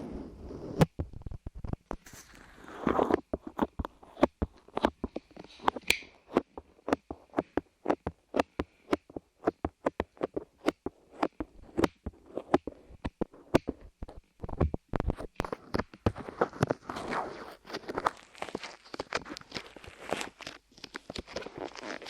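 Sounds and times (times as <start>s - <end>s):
muffled rubs on microphone: 0.0s - 22.0s
sticky clay clicks and taps: 3.1s - 16.7s.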